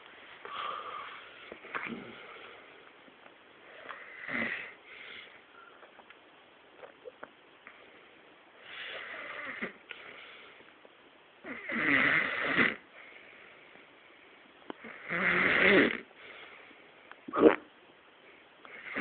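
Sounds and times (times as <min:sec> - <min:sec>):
man snoring: 0:04.1 - 0:04.8, 0:11.5 - 0:12.8, 0:14.8 - 0:16.1.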